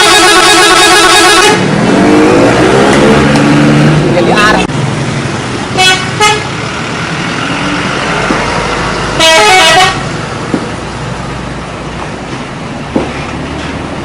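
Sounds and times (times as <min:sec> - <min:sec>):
musical bus air horn: 0:00.0 - 0:01.8, 0:05.8 - 0:06.4, 0:09.2 - 0:10.1
traffic noise: 0:00.0 - 0:14.0.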